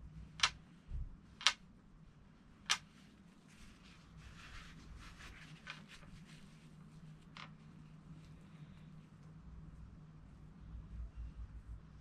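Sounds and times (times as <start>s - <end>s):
sharp clicks: 1.4s - 1.6s
paper towel rustling: 2.9s - 8.4s.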